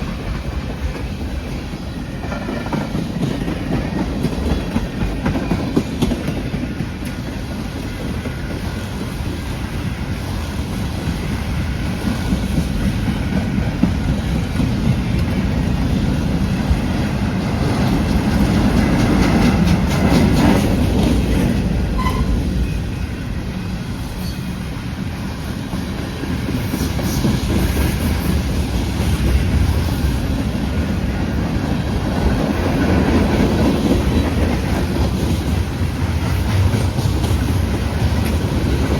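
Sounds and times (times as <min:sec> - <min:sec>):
freight train rumbling: 0:00.0 - 0:38.9.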